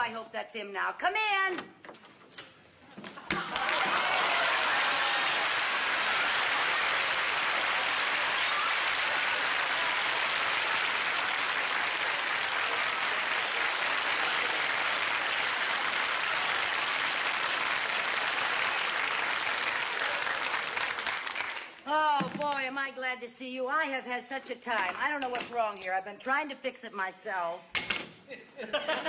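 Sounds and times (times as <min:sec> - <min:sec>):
audience applauding: 0:03.3 - 0:21.8.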